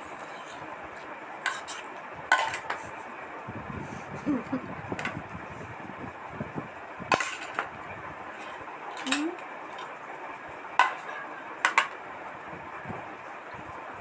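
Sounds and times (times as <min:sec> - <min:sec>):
utensil clinking on plate: 0:01.5 - 0:02.8, 0:07.1 - 0:07.7, 0:10.8 - 0:12.0.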